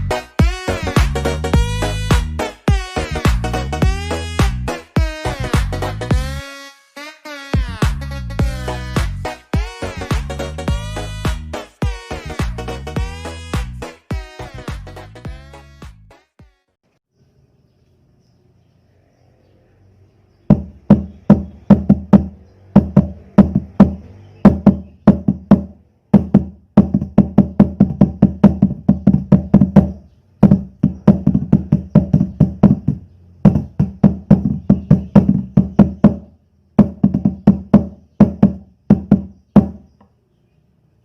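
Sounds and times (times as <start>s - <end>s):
floor tom drum hits: 20.5s - 36.2s.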